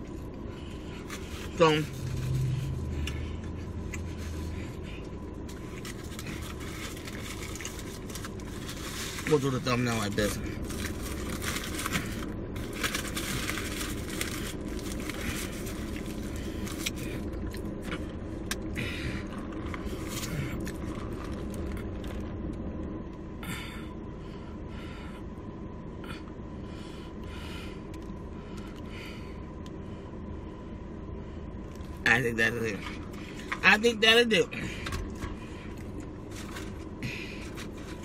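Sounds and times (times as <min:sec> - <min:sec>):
rustles and handling noises: 0:00.0 - 0:18.2, 0:34.8 - 0:38.0
low hum inside a car: 0:00.0 - 0:38.0.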